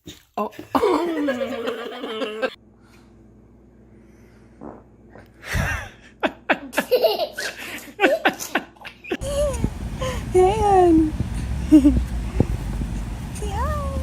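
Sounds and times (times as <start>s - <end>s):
baby farting: 4.6s - 5.2s.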